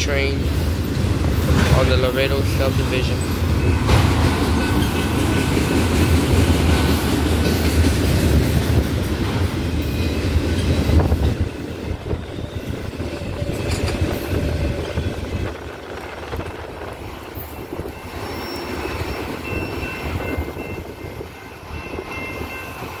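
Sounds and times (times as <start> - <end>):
freight train wheels rumbling: 0.0 - 23.0
faint high wheel squeals: 12.1 - 15.5, 17.4 - 22.9.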